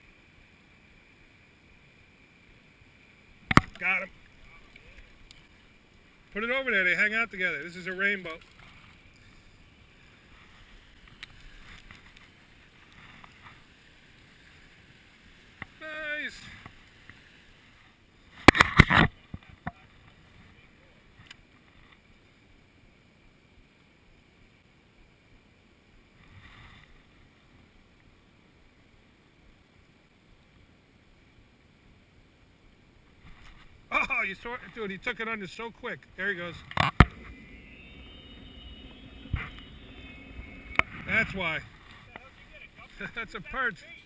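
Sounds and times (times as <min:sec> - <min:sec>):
faint background hiss: 0:00.0 - 0:44.0
faint waterside ambience: 0:00.0 - 0:44.0
brief soft noise: 0:36.6 - 0:42.6.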